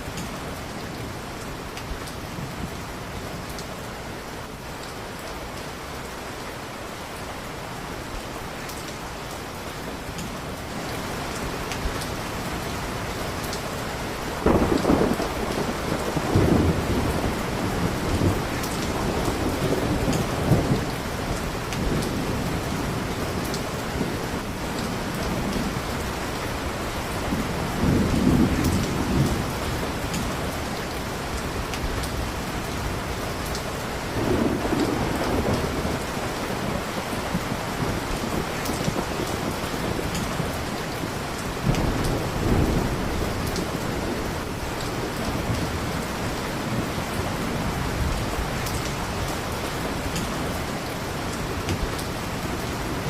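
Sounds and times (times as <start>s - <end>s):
heavy rain: 0.0s - 53.0s
thunder rumbling: 14.4s - 26.0s, 27.3s - 30.7s, 34.1s - 41.0s.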